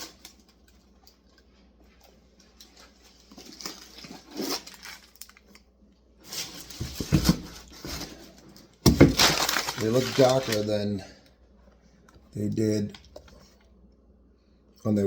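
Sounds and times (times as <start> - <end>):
shoes and packaging rustling: 1.9 - 5.5, 6.2 - 11.0.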